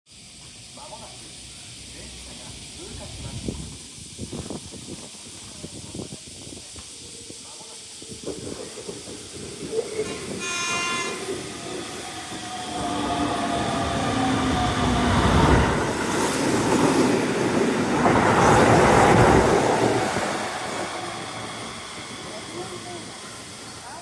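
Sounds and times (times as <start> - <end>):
train rumble with rail clatter: 0.2 - 24.0
train horn blast: 10.0 - 11.4.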